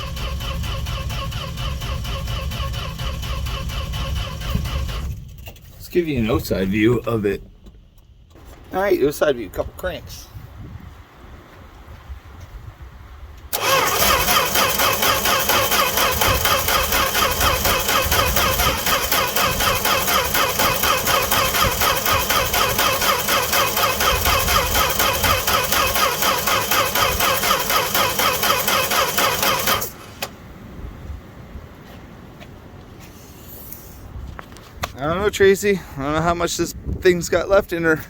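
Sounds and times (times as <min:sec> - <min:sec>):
engine cranking by starter: 0:00.0 - 0:08.5, 0:13.5 - 0:30.4.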